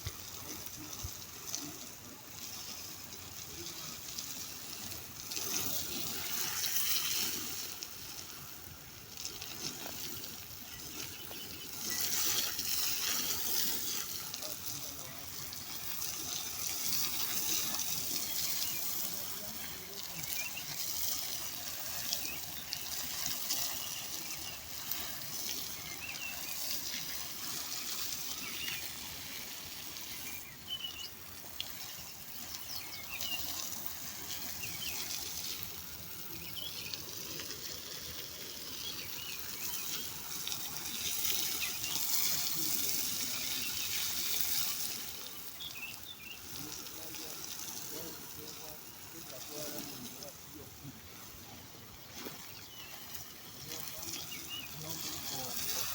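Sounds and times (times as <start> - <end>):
water running: 0.0 - 55.9
bird chirps: 10.7 - 12.4, 27.8 - 29.0, 30.1 - 31.2, 32.5 - 33.7, 38.8 - 40.2, 45.6 - 46.5.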